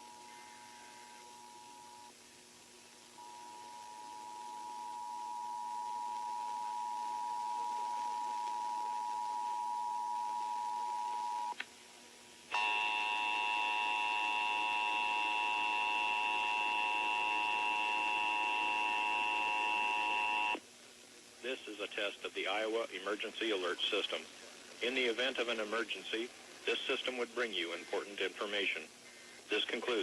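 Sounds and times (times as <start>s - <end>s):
click: 11.5s - 11.7s.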